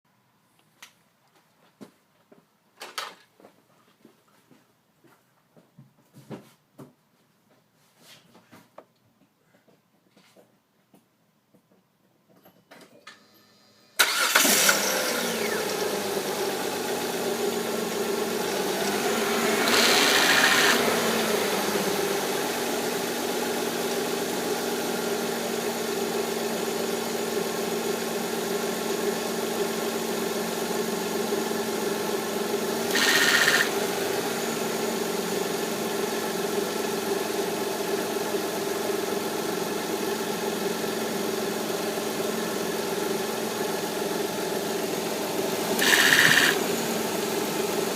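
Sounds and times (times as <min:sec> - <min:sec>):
car engine idling: 0:14.0 - 0:29.8.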